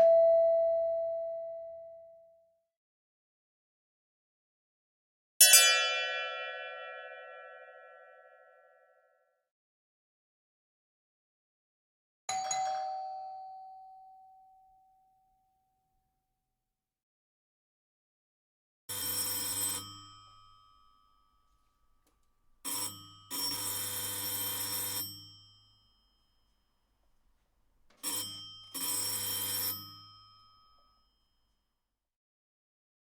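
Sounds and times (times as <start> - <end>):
electric doorbell ringing: 0.0 - 1.8, 12.3 - 14.5, 18.9 - 21.6, 22.6 - 26.8, 28.0 - 31.6.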